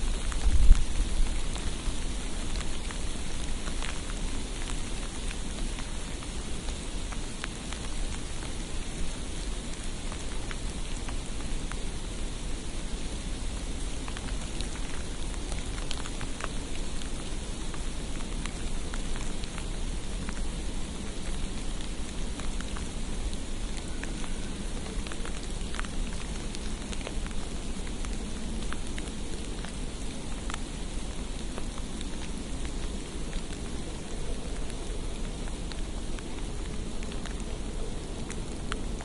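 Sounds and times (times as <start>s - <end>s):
steady low rumble: 0.0s - 12.4s
hiss of falling snow: 0.0s - 39.0s
light ticks of flakes: 0.0s - 39.0s.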